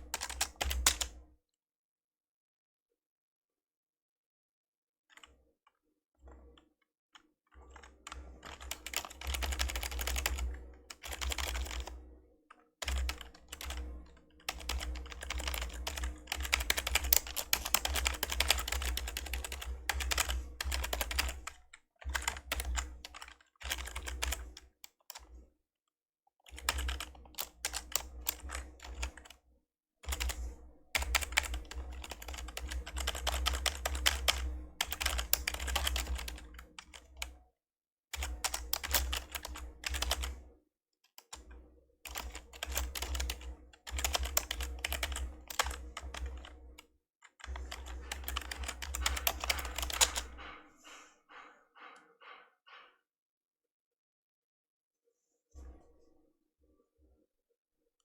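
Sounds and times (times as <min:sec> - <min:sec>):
typing on membrane keyboard: 0:00.0 - 0:01.2, 0:07.5 - 0:12.0, 0:12.8 - 0:25.3, 0:26.5 - 0:29.4, 0:30.0 - 0:37.3, 0:38.1 - 0:40.3, 0:42.0 - 0:50.6.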